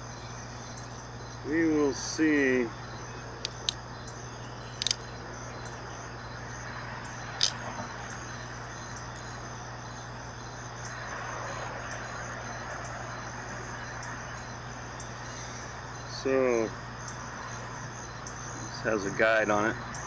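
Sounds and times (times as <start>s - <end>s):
insects chirping: 0.0s - 20.0s
sharp clicks: 3.4s - 3.8s, 4.8s - 5.1s, 7.4s - 7.6s.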